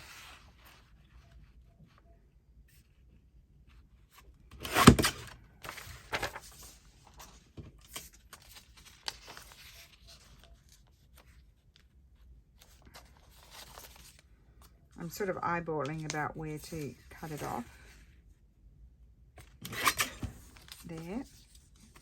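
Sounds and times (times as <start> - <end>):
paper rustling: 5.6 - 14.8, 19.7 - 22.0.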